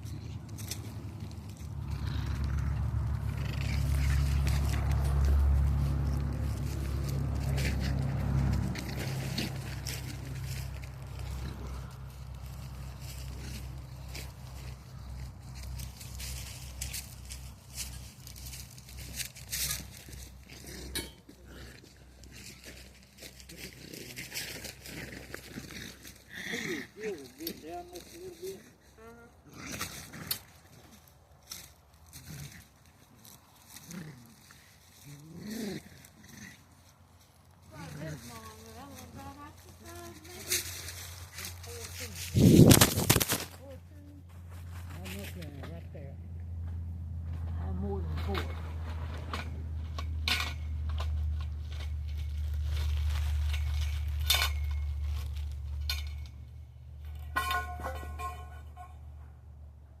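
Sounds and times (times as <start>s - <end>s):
low steady rumble: 0.0s - 27.2s
low drawn-out animal calls: 1.6s - 5.1s
parts clicking and knocking: 48.3s - 58.9s.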